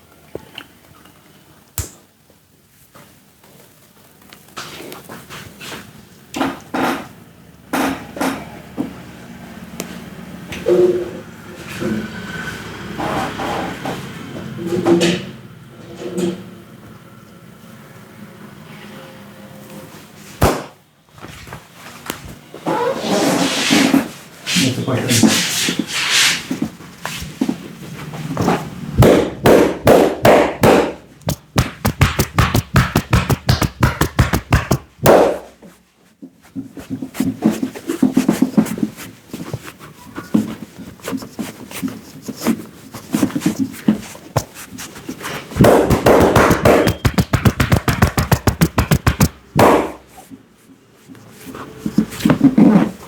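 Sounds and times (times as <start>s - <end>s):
hands tapping and chopping on head: 20.4s - 20.8s, 28.4s - 35.5s, 45.6s - 50.0s.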